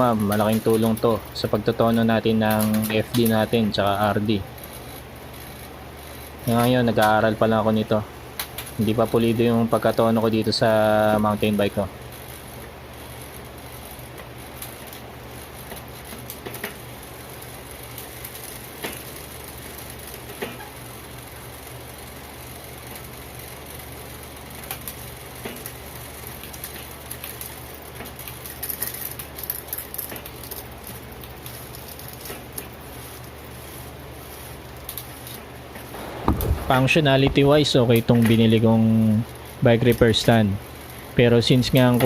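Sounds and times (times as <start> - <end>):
steady low hum: 35.9 - 38.7
light clicks and knocks: 36.0 - 38.4.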